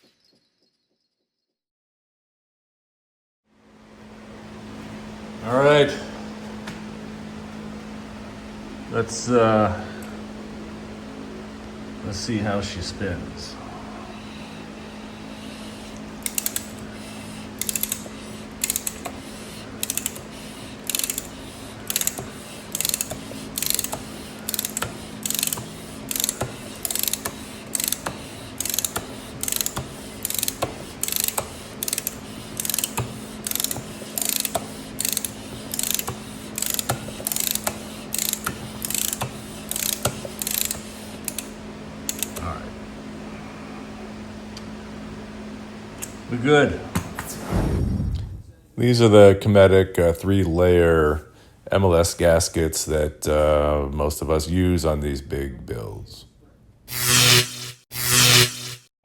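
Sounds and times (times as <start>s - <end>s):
steady low hum: 3.7s - 58.9s
ratchet wrench clicking: 16.2s - 16.8s, 17.6s - 19.2s, 19.8s - 41.5s, 42.1s - 42.4s.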